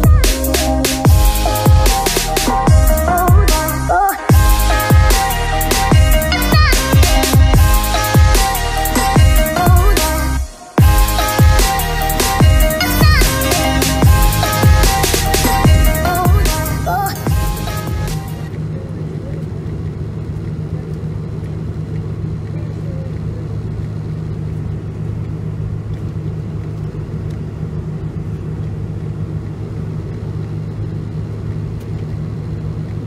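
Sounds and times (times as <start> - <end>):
airliner cabin rumble and hum: 10.8 - 33.0.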